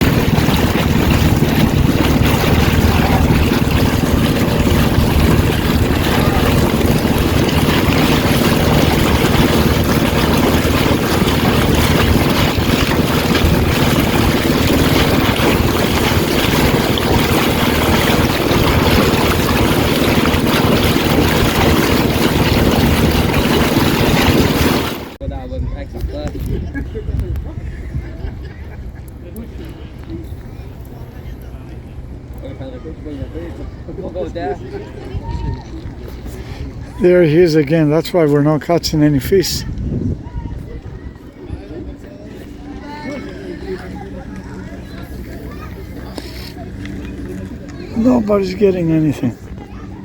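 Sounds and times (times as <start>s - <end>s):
motor drone: 0.0s - 25.2s
wind noise on microphone: 0.0s - 28.5s, 35.0s - 37.0s, 39.0s - 42.9s.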